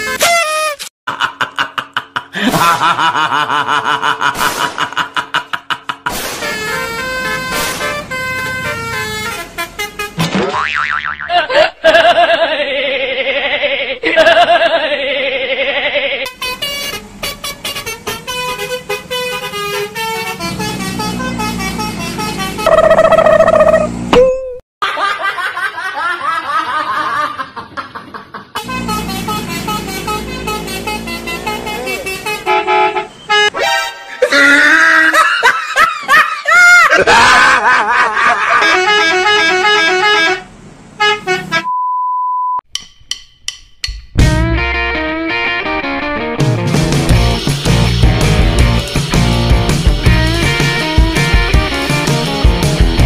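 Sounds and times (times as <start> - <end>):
bus horn melody: 6.4 - 10.3, 16.2 - 24.1, 28.6 - 34.4, 38.4 - 41.8
long loud horn note: 28.6 - 33.9
steady beep: 41.7 - 42.6.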